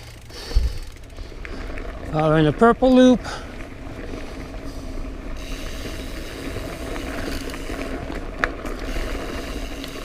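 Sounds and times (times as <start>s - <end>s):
mountain bike rattling over dirt: 0.0s - 10.0s.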